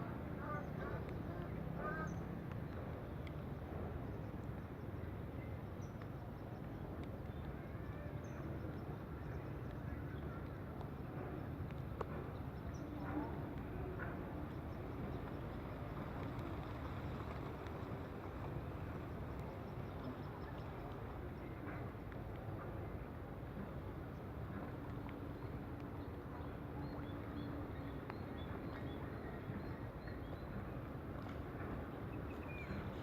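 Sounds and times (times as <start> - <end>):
outdoor background noise: 0.0 - 33.0.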